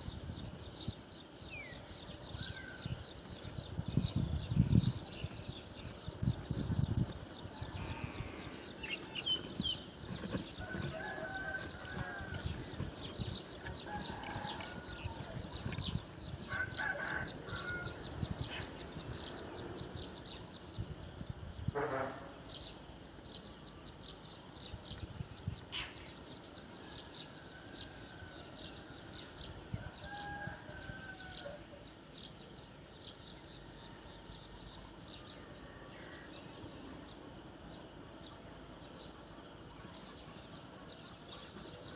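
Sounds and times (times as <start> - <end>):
rooster-like crowing calls: 10.6 - 13.0, 13.6 - 15.8, 16.4 - 18.2, 29.7 - 31.9.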